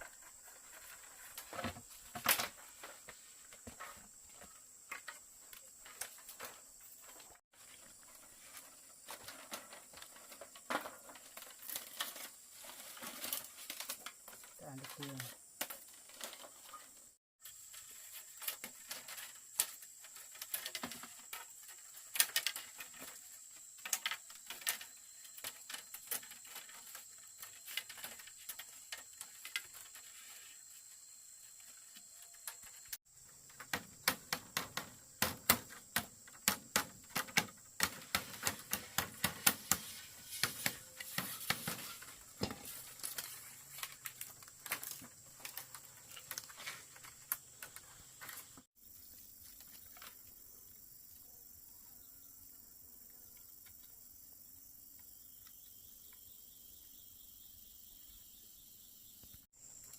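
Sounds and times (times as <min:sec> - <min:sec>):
knocks and clicks on bamboo: 0:33.5 - 0:43.1.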